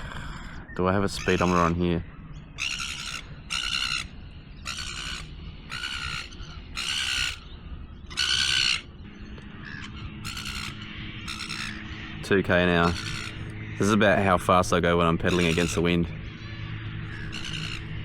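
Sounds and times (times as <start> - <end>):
crow cawing: 0.0 - 12.1, 12.7 - 14.0, 15.0 - 18.0.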